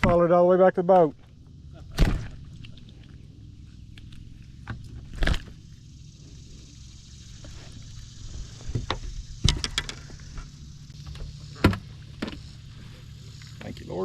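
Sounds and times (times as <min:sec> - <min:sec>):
low steady hum: 0:00.0 - 0:14.0
knocks and clatters in a boat: 0:08.6 - 0:10.5.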